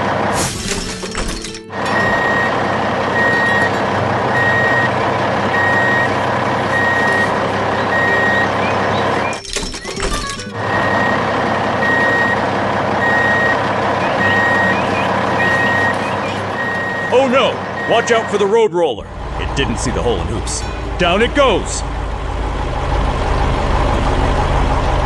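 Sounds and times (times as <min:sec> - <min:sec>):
heavy engine running: 0:00.0 - 0:25.0
reversing alarm beeping: 0:01.9 - 0:09.5, 0:10.2 - 0:12.4, 0:13.0 - 0:18.6.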